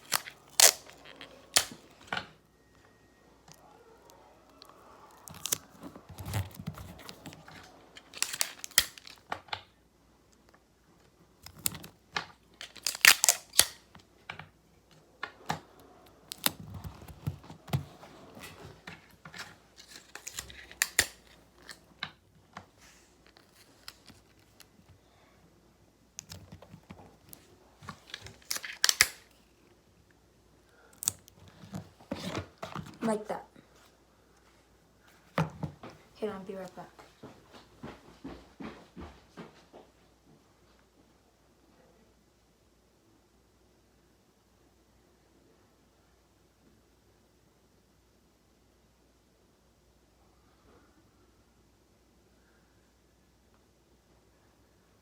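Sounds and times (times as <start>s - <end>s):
scraping tearing bursts: 0.0s - 1.8s, 8.0s - 9.2s, 12.7s - 13.8s.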